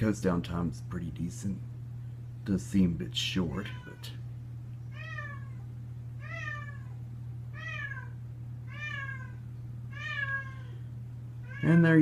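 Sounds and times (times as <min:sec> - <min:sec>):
steady low hum: 0:00.0 - 0:12.0
cat meowing: 0:03.6 - 0:04.2, 0:04.9 - 0:10.8, 0:11.4 - 0:11.9.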